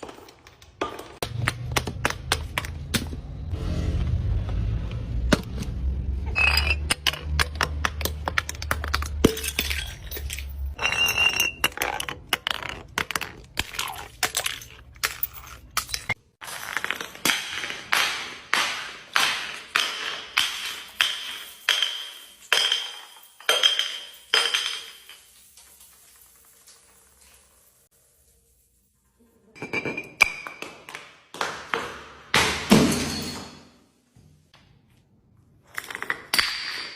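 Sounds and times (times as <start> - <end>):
glass crunching and clinking: 6.3 - 18.0, 19.6 - 27.9.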